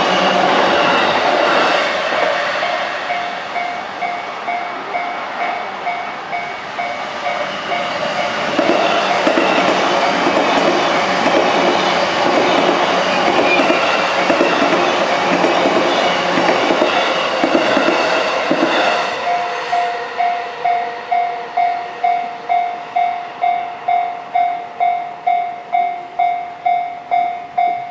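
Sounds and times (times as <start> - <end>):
electric train running: 0.0 - 27.9
train wheel clatter: 5.9 - 21.2.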